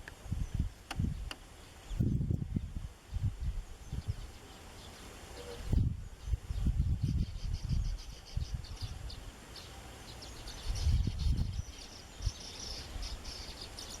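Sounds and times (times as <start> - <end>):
low rumble on microphone: 1.9 - 4.4, 5.5 - 9.2.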